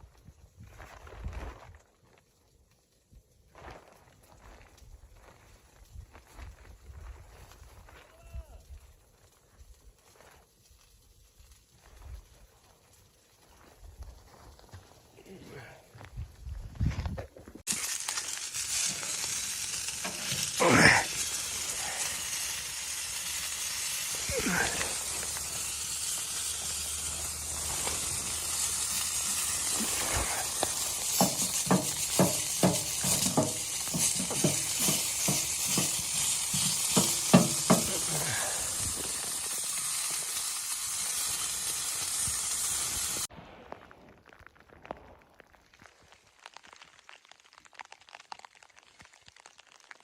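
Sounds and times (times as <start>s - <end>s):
food sizzling in a frying pan: 17.7s - 43.3s
quick stirring or scraping: 29.2s - 38.1s.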